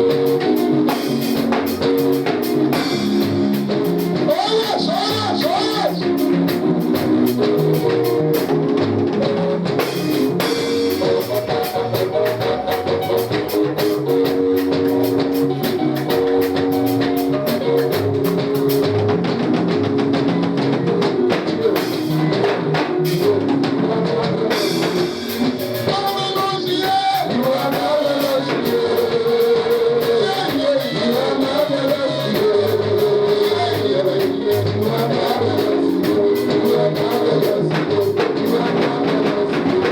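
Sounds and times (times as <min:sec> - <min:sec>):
live church praise music: 0:00.0 - 0:39.9
people singing: 0:02.0 - 0:06.6, 0:21.3 - 0:39.9.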